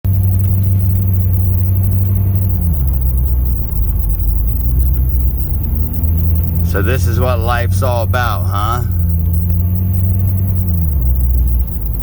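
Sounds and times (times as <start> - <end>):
low engine drone: 0.5 - 9.6.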